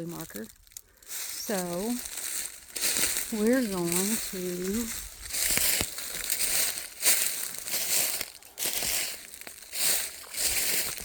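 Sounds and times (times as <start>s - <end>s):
footsteps crunching dry leaves: 0.0s - 11.0s.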